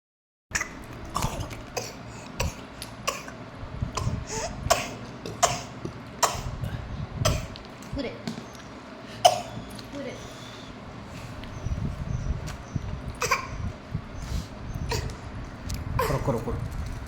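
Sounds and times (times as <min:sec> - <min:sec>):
baby fake coughing: 0:00.6 - 0:03.4, 0:04.0 - 0:06.6, 0:07.2 - 0:07.6, 0:09.2 - 0:09.6, 0:13.2 - 0:13.7, 0:14.9 - 0:15.2, 0:16.0 - 0:16.4.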